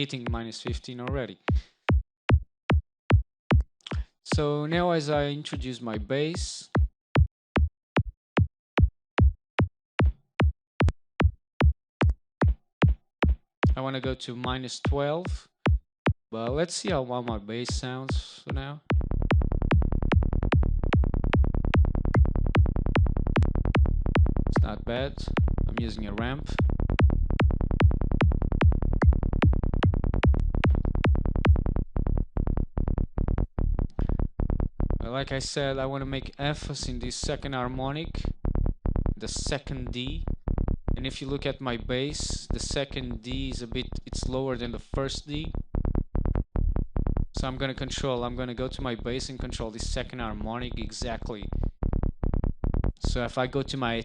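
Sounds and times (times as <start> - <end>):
synthesized kick drum thumps: 0.0 - 54.0.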